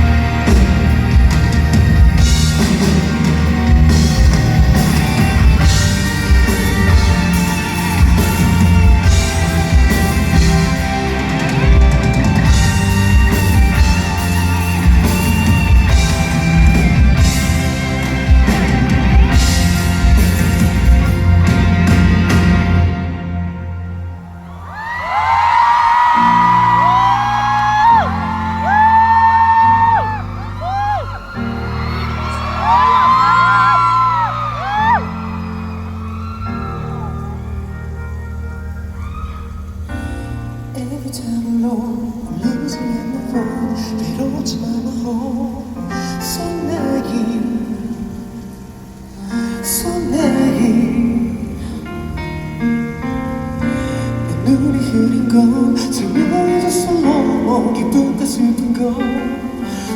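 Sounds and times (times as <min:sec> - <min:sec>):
loud rock band music: 0:00.0 - 0:40.7
audience screaming and whooping: 0:00.0 - 0:40.8
pop ballad over sound system: 0:00.0 - 0:59.9.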